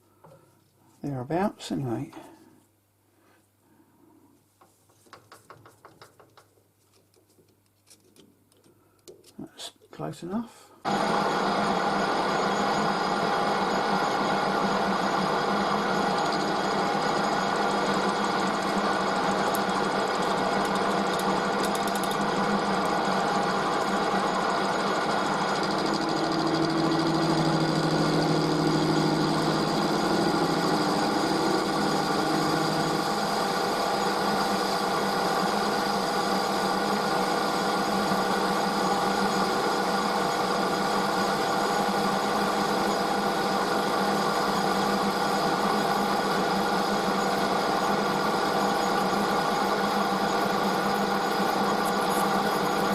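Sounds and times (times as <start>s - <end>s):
metal lathe running: 10.9s - 52.9s
lower machine note: 25.3s - 34.6s.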